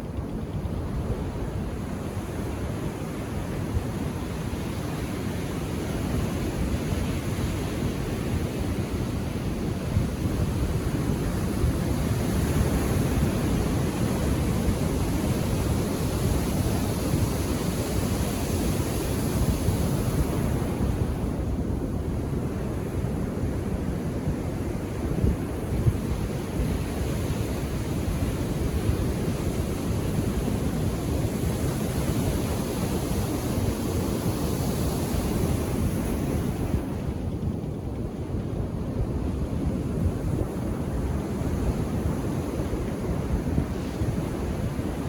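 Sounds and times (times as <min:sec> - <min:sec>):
ocean surf washing onto beach: 0:03.5 - 0:45.0.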